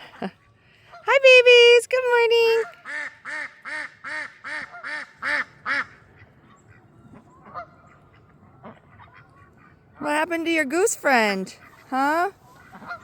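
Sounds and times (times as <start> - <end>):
duck quacking: 2.6 - 6.8, 7.4 - 9.8, 11.5 - 13.0.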